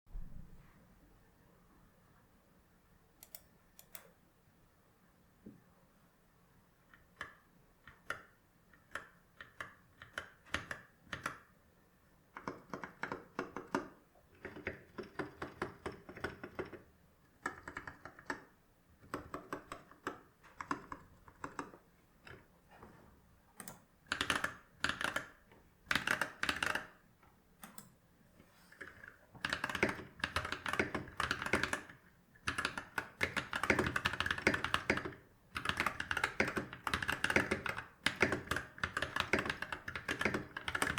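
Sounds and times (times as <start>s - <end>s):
typing on mechanical keyboard: 6.9s - 11.5s, 12.3s - 22.5s, 23.6s - 27.0s, 28.8s - 40.9s.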